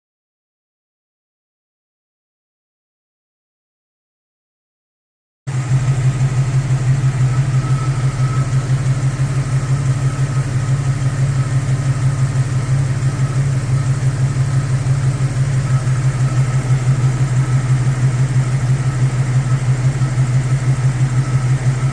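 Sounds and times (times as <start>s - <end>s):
car engine idling: 5.5s - 21.9s.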